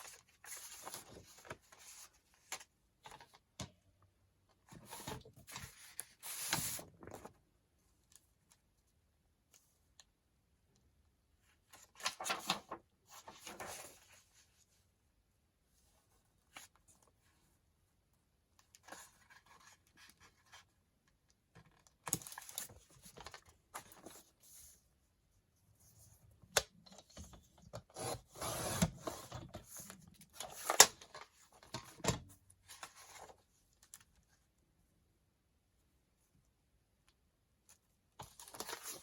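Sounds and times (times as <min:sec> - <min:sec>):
paper rustling and sliding: 0:04.7 - 0:07.3, 0:11.8 - 0:14.4, 0:27.8 - 0:31.8.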